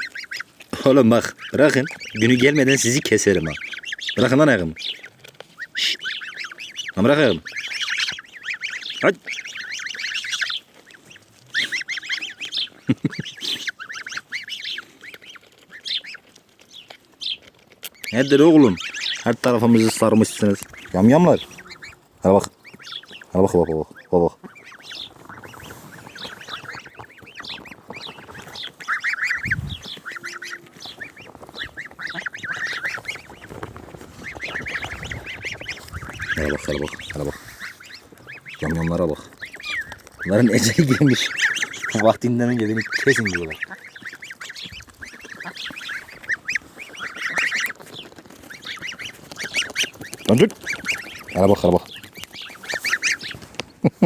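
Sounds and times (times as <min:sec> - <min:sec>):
geese honking: 0:00.0 - 0:53.6.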